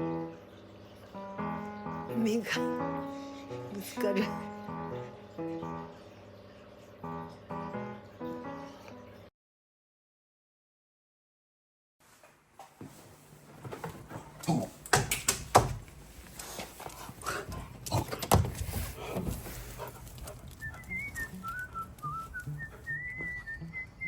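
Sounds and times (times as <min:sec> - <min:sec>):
sharp knocks and clatters: 0:13.7 - 0:16.0
high wavering whistled tune: 0:20.6 - 0:24.0.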